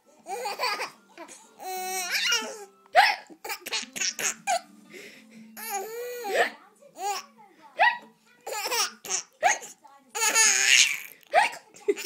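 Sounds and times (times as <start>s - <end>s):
baby laughing: 0.3s - 4.7s, 8.4s - 12.0s.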